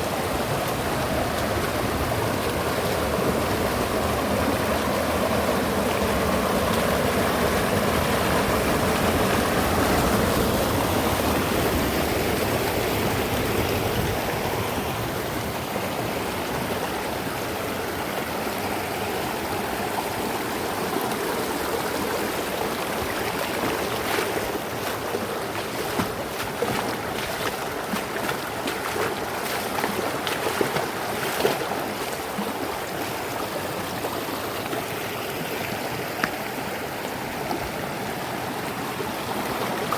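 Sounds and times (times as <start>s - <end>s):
water splashes and drips: 0.0s - 13.8s, 21.0s - 37.8s
river flowing over rocks: 0.0s - 39.9s.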